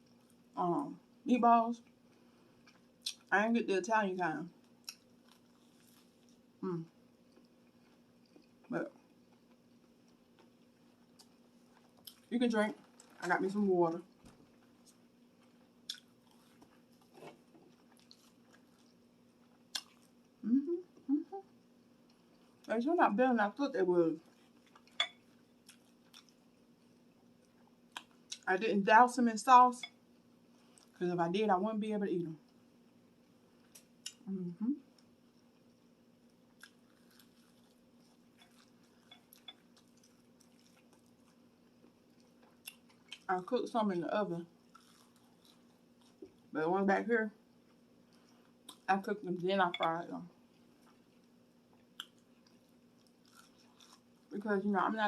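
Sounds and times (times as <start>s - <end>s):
low steady hum: 0.0s - 55.0s
faint chewing: 1.8s - 3.3s, 4.5s - 22.7s, 24.2s - 28.5s, 29.8s - 31.0s, 32.4s - 43.5s, 44.4s - 46.5s, 47.5s - 48.9s, 50.2s - 54.4s
soft mouth clicks: 52.0s - 52.2s.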